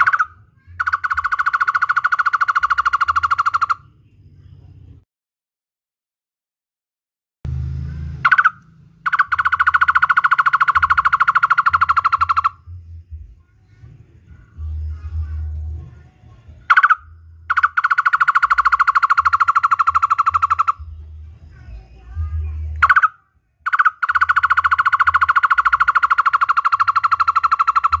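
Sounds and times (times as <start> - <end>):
barbet calling rapid notes: 0.0 - 3.9, 8.2 - 12.8, 16.6 - 28.0.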